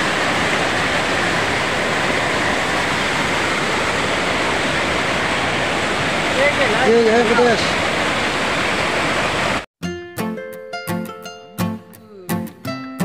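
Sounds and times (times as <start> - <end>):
river water rushing: 0.0 - 9.7.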